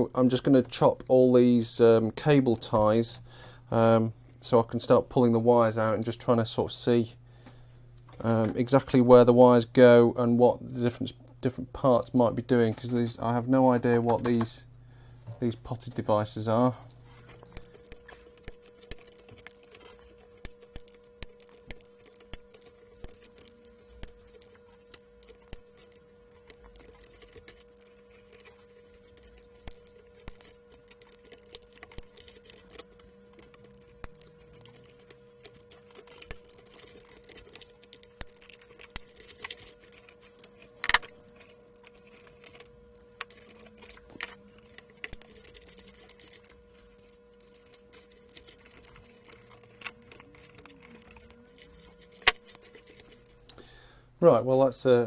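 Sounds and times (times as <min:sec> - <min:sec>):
faint steady hum: 0:00.0 - 0:55.0
cutters snipping cable ties: 0:17.1 - 0:53.6.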